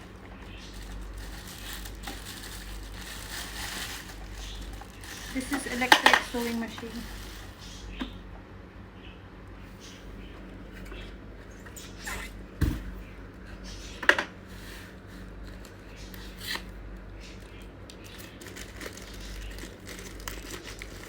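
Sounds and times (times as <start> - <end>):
packaging crinkling: 0.0 - 7.9, 17.4 - 21.0.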